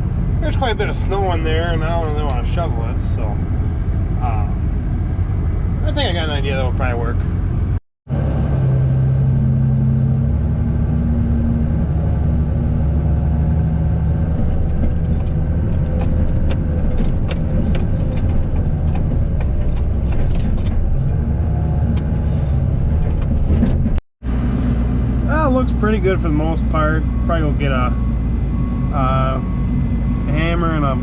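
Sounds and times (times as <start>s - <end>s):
held tone: 26.5s - 31.0s.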